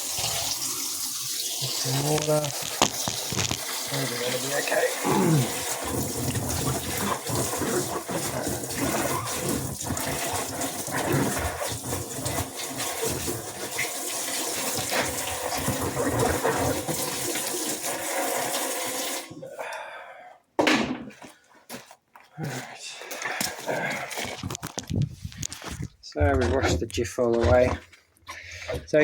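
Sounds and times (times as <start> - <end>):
water pouring and splashing: 0.0 - 19.3.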